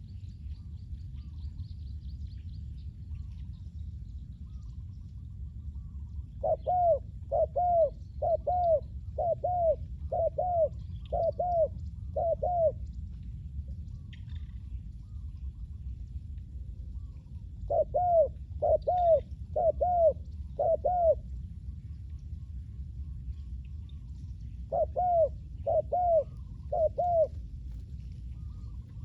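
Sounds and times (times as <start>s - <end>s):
faint small bird chirps: 0.0s - 13.1s, 16.8s - 29.0s
low steady rumble: 0.0s - 29.0s
dove cooing: 5.8s - 12.8s, 17.7s - 21.2s, 24.7s - 27.4s.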